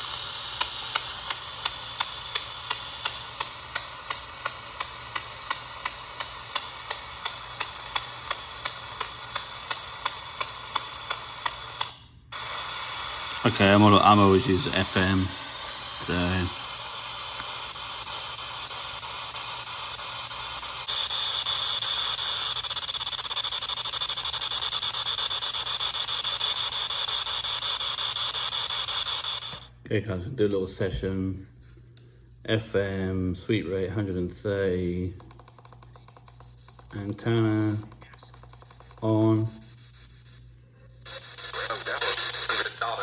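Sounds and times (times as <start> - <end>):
even clicks: 0.0 - 12.0
radio static hissing: 0.0 - 29.8, 36.0 - 43.0.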